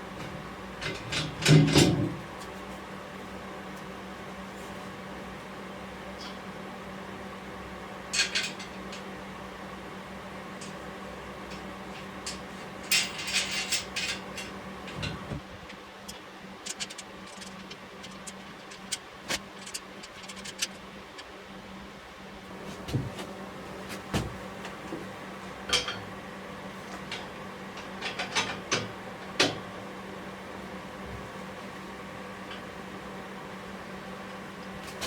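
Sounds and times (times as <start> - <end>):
steady low hum: 0.0 - 26.8
tools and metal parts clanking: 8.2 - 9.0, 12.2 - 15.2.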